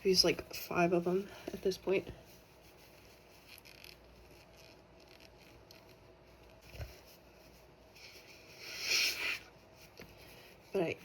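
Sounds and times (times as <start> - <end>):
faint hiss: 7.9 - 10.0.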